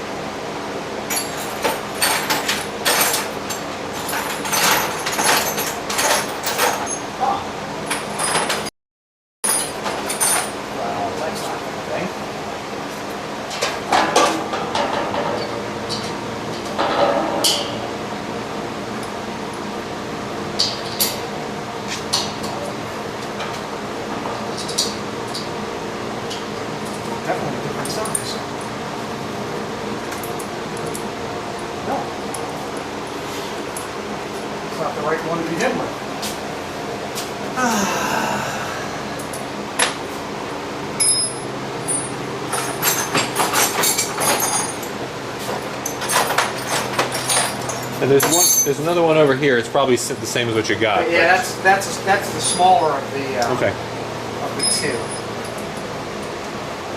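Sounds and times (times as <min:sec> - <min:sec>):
steady low hum: 0:09.5 - 0:56.9
metal hand tools clinking: 0:46.2 - 0:48.8.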